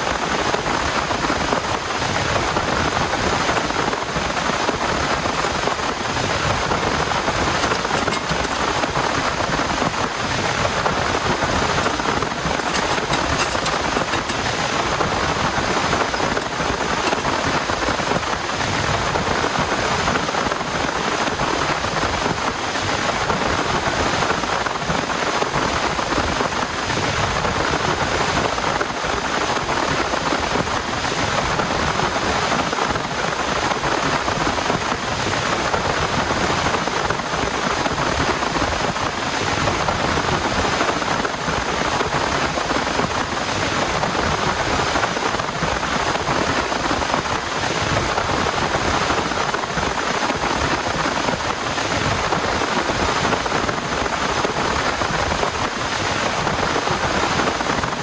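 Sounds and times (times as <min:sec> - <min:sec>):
heavy rain pouring: 0:00.0 - 0:58.0.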